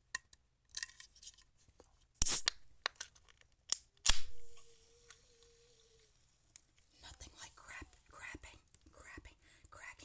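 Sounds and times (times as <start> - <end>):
can opening crack: 2.2 - 5.5.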